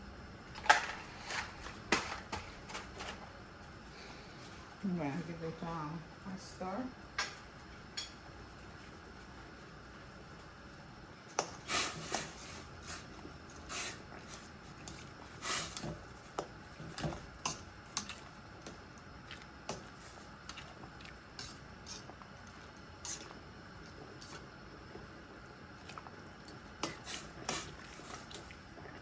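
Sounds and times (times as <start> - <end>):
utensil scraping and clinking pot: 11.4 - 18.8, 19.7 - 22.2.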